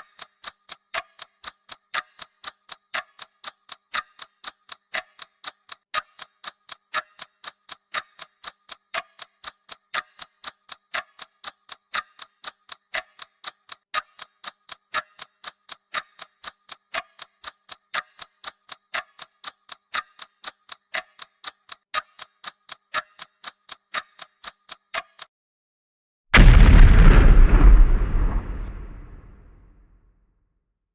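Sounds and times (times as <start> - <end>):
clock ticking: 0.0 - 25.3.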